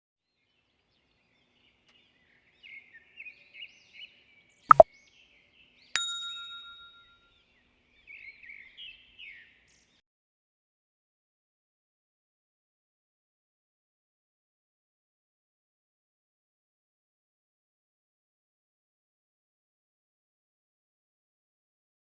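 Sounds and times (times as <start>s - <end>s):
bell-like ding: 6.0s - 7.1s.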